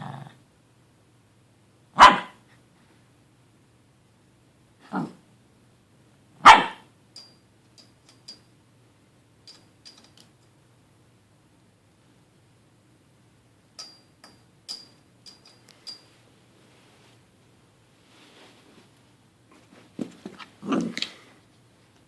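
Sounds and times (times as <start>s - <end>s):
dog barking: 2.0s - 2.4s, 6.4s - 6.9s
light clicks and clinks: 7.2s - 8.5s, 9.4s - 10.5s, 13.8s - 16.2s.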